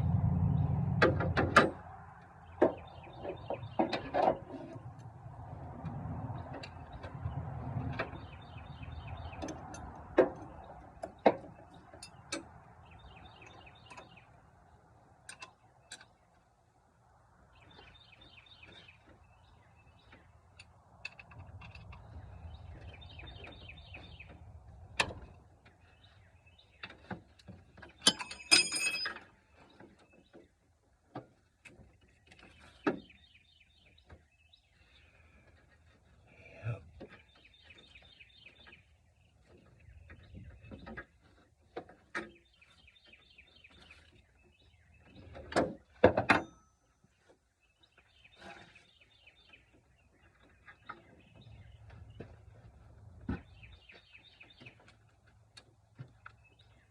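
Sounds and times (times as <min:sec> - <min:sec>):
small birds chirping: 0:06.4 - 0:16.7, 0:17.4 - 0:28.5, 0:29.5 - 0:46.0, 0:47.0 - 0:56.9
hand tools clicking and knocking: 0:26.8 - 0:29.3
metallic clatter: 0:27.9 - 0:29.3.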